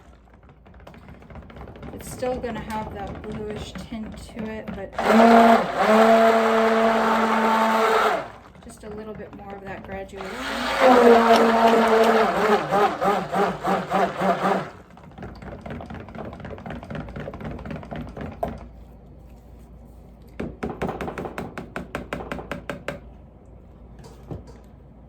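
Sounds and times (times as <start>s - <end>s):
stick blender whirring: 0.0s - 18.0s
rapid stirring strokes: 10.2s - 18.0s.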